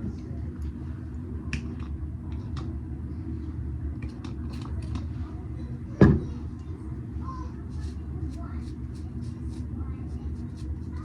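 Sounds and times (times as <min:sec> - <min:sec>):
low rumble of room noise: 0:00.0 - 0:11.0
soft handling sounds: 0:07.4 - 0:11.0.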